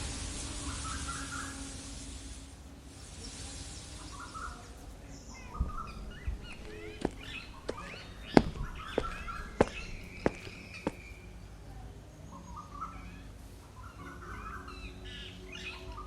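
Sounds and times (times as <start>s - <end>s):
hiss: 0.0s - 4.8s
small birds chirping: 3.1s - 16.0s.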